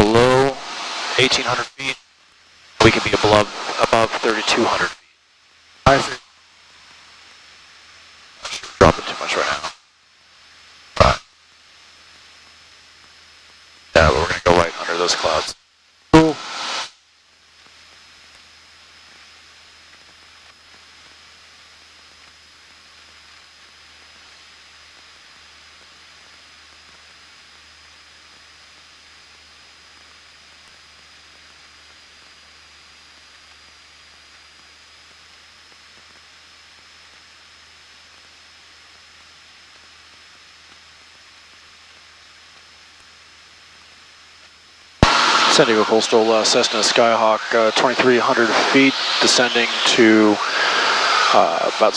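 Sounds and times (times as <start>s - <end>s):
intercom audio hiss: 0.0s - 2.0s, 2.8s - 5.1s, 5.8s - 6.3s, 8.4s - 9.8s, 10.9s - 11.3s, 13.9s - 17.0s, 45.0s - 51.9s
thin high whine: 0.0s - 2.0s, 2.6s - 5.2s, 5.8s - 7.4s, 8.4s - 9.8s, 10.4s - 15.6s, 16.2s - 17.0s, 17.6s - 51.9s.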